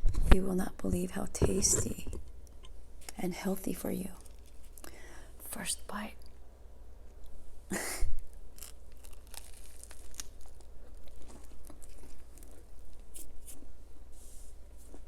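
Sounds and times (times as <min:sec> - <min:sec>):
crunching and chewing sandwich: 0:04.2 - 0:04.9, 0:08.2 - 0:13.8.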